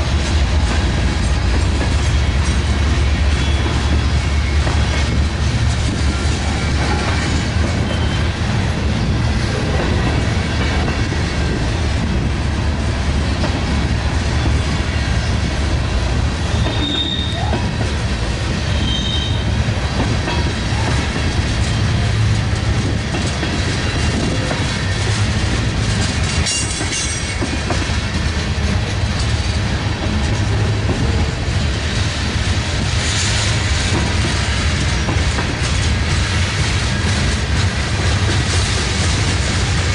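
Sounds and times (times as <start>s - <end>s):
high wheel squeals: 3.3s - 5.0s, 7.8s - 8.3s, 16.5s - 17.5s, 18.7s - 19.6s
wheels clacking over rail joints: 16.5s - 39.9s.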